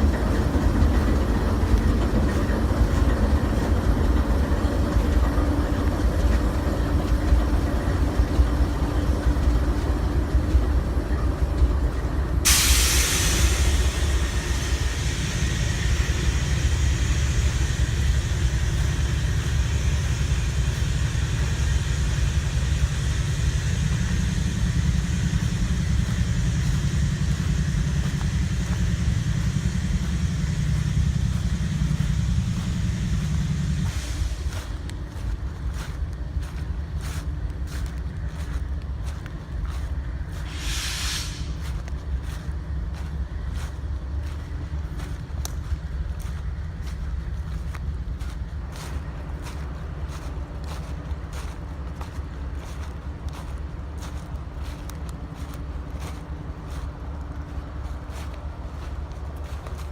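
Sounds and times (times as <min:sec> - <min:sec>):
freight train rumbling by: 0:00.0 - 0:59.9
hiss: 0:12.4 - 0:34.9, 0:40.3 - 0:42.2.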